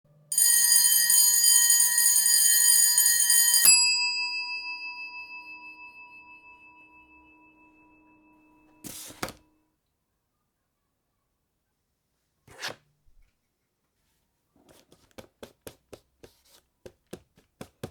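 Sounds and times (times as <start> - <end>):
bell-like ding: 3.0 - 8.9.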